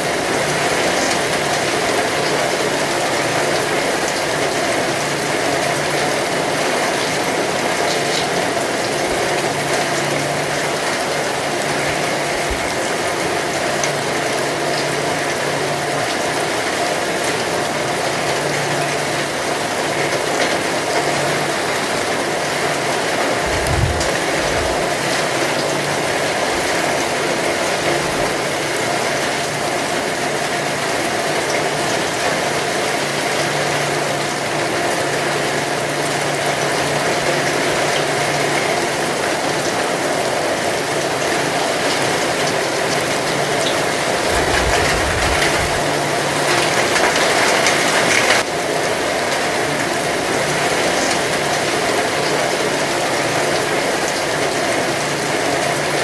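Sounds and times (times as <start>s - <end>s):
heavy rain falling: 0.0s - 56.0s
low rumble: 23.4s - 24.8s.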